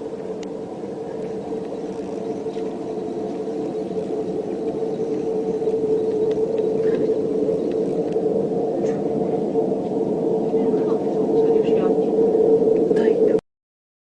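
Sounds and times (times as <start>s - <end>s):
low droning hum: 0.0s - 13.4s.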